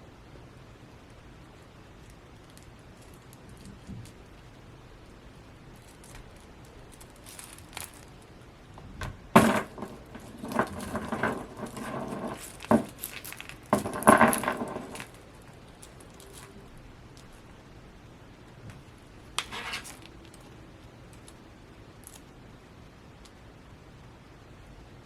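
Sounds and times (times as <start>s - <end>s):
plastic clicking and packaging rustling: 2.0s - 4.3s, 5.8s - 17.4s, 18.6s - 21.4s.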